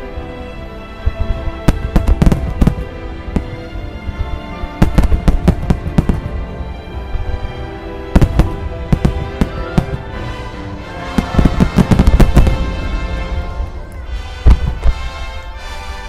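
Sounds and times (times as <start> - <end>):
music: 0.0 - 16.0
fireworks bursting: 1.0 - 6.4, 8.1 - 15.2.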